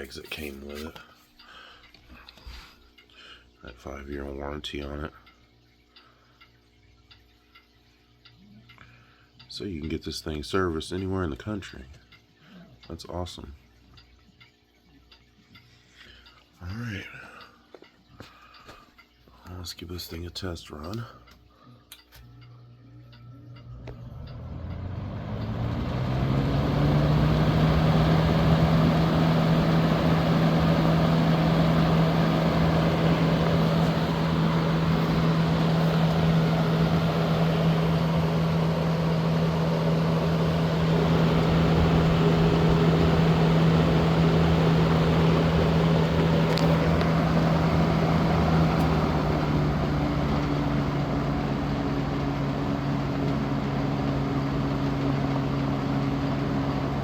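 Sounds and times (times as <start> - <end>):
box fan motor hum: 0.0 - 2.7, 22.1 - 57.0
rush of air from fan blades: 25.6 - 52.8.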